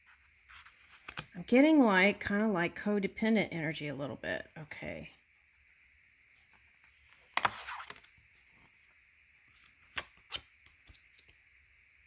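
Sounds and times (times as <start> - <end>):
cards rustling slide: 6.8 - 8.8, 9.5 - 11.4
cards snapping: 9.9 - 11.3.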